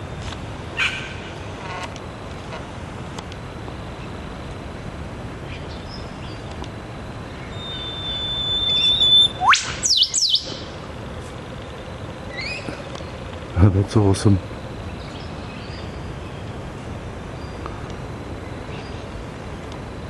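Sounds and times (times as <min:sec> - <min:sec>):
quick descending bird notes: 0:07.6 - 0:10.6.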